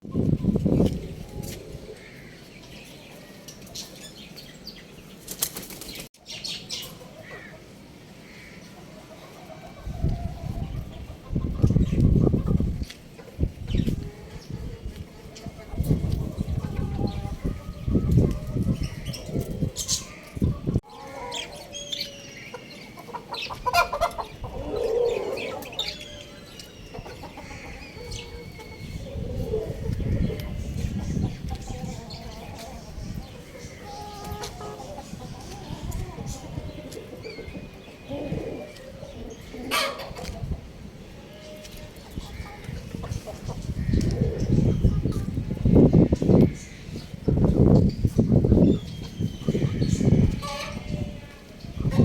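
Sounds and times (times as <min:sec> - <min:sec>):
rooster and chickens clucking: 0:00.1 - 0:05.1, 0:06.2 - 0:52.0
rooster wings flapping: 0:05.3 - 0:06.1.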